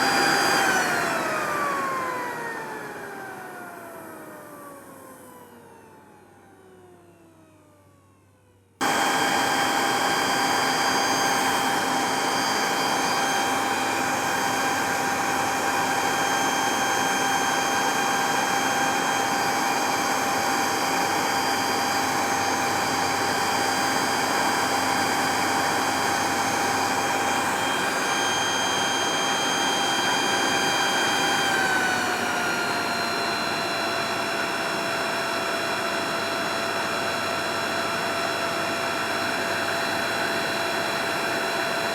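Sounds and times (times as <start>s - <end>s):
leaf blower running: 0.0s - 4.6s, 8.8s - 41.9s.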